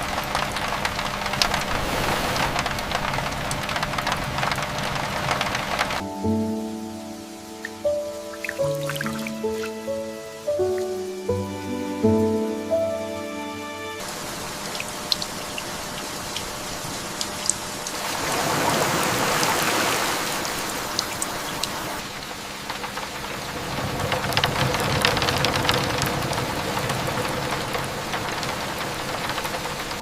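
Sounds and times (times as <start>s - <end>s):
raindrops tapping close by: 0.0s - 10.1s, 20.6s - 30.0s
steady rain falling: 0.0s - 30.0s
soft music notes: 6.0s - 14.1s.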